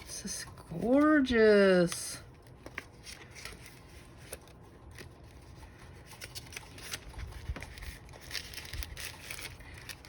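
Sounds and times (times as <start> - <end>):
paper rustling: 0.0 - 10.0.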